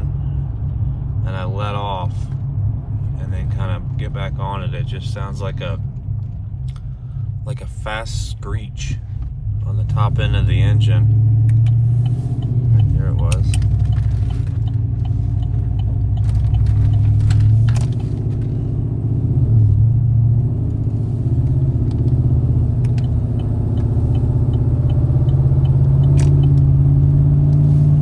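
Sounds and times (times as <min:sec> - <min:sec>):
truck engine and exhaust cruising: 0:00.0 - 0:28.0.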